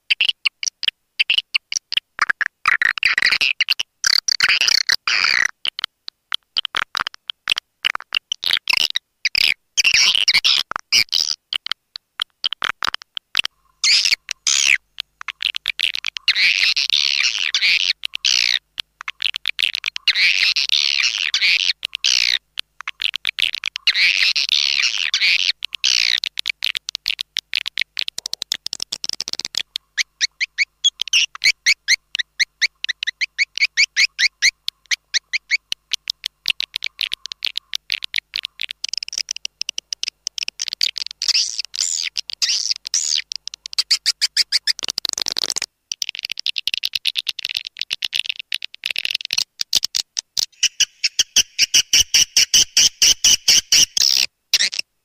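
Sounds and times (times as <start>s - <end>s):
clicking chirps: 5.6s - 54.8s
swiftlets twittering and chattering: 50.5s - 54.0s.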